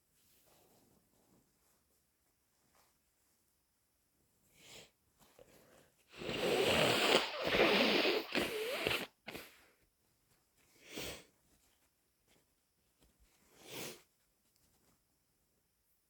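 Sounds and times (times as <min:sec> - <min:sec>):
short sniff: 0:06.1 - 0:09.8
nose blowing: 0:06.2 - 0:09.6.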